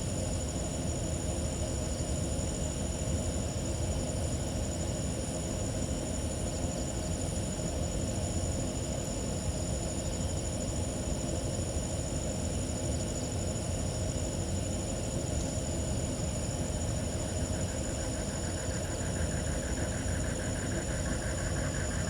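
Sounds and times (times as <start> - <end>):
night insects chirring: 5.7 - 22.0.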